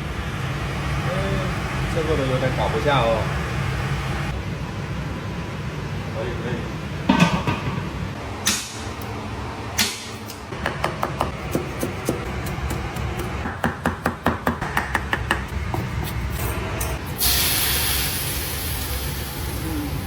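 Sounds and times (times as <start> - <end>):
cleaver chopping on a board: 10.6 - 16.2
food sizzling in a hot wok: 17.2 - 20.0.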